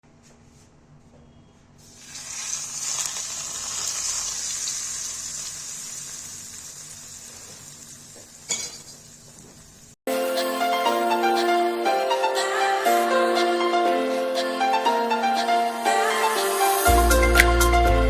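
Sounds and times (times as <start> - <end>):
hot oil sizzling: 1.8 - 10.0
music: 10.1 - 18.0.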